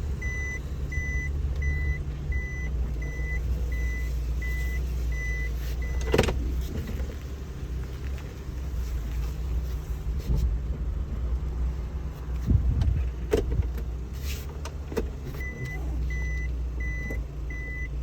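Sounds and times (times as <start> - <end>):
reverse warning beeping: 0.0 - 6.2, 15.4 - 18.0
van engine idling: 0.0 - 18.0.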